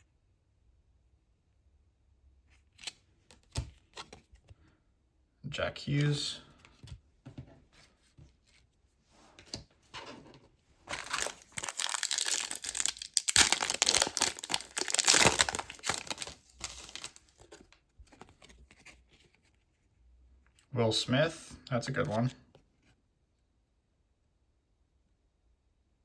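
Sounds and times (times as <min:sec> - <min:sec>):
card wrapper tearing and crinkling: 0:10.9 - 0:18.6.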